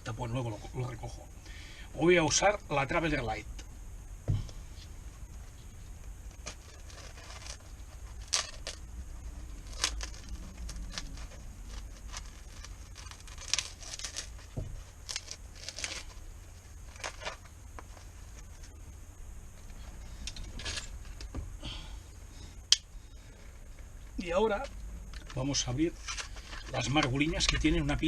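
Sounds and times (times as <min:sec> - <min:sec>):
bread roll tearing: 0:06.0 - 0:18.8.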